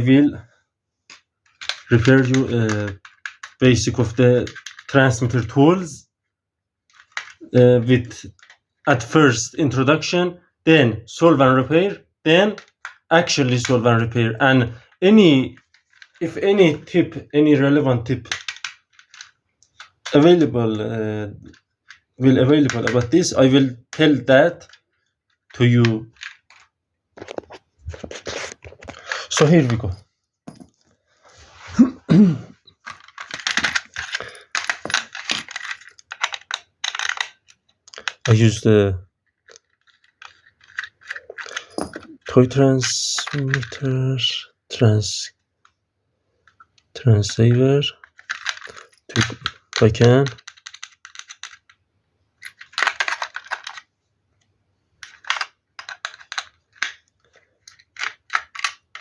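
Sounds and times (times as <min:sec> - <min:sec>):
quick irregular clicks and clatters: 0:01.1 - 0:03.7, 0:04.5 - 0:05.1, 0:06.9 - 0:07.5, 0:08.3 - 0:08.6, 0:12.5 - 0:13.8, 0:15.6 - 0:16.3, 0:18.2 - 0:20.3, 0:24.6 - 0:29.4, 0:32.7 - 0:38.4, 0:39.2 - 0:42.0, 0:48.0 - 0:59.0.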